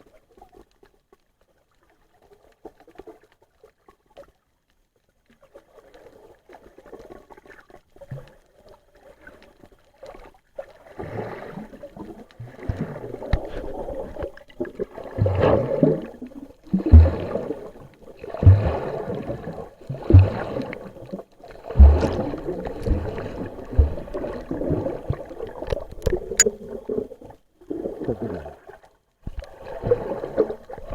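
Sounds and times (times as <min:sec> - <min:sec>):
water gurgling underwater: 0:10.6 - 0:30.9
low thumps: 0:21.8 - 0:24.2.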